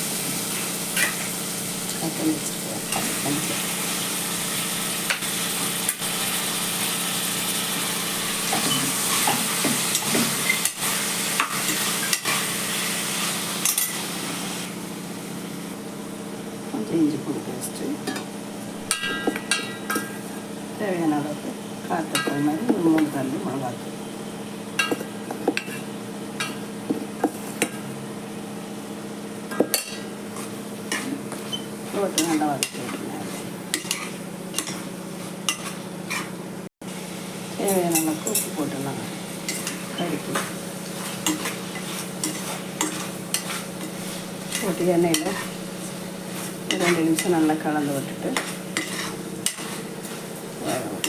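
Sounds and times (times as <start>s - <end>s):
food sizzling in oil: 0.0s - 51.0s
spoon scraping a pan: 7.6s - 14.1s, 24.8s - 27.9s, 29.5s - 36.4s, 39.4s - 51.0s
metal spoon scraping cooking pot: 40.9s - 45.6s, 48.3s - 50.9s.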